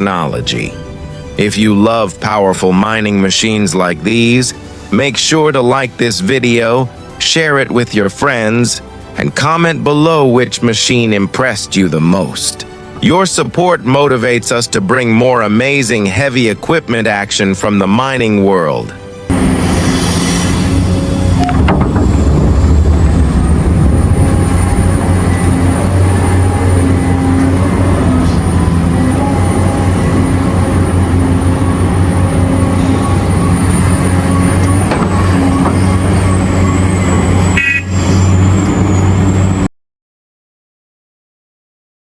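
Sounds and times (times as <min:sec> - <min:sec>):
heavy diesel machinery drone: 0:00.0 - 0:07.6, 0:19.0 - 0:39.7
high whine: 0:19.3 - 0:39.7.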